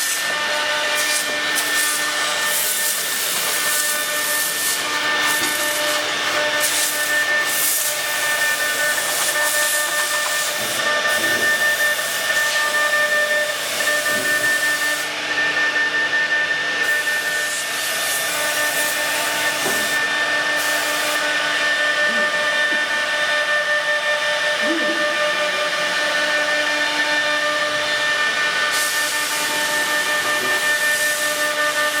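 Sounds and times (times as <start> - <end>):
router spindle whining: 0.0 - 32.0
hiss: 20.6 - 21.2.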